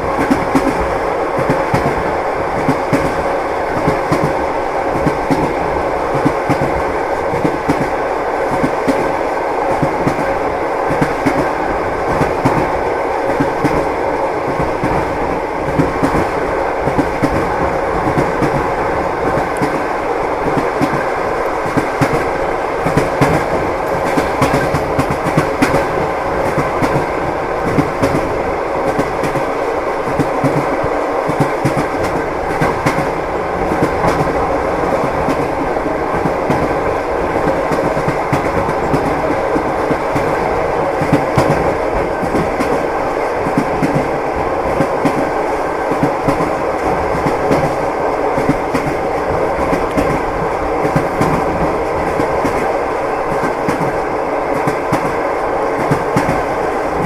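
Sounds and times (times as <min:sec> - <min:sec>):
train wheels clattering on rails: 0:00.0 - 0:57.0.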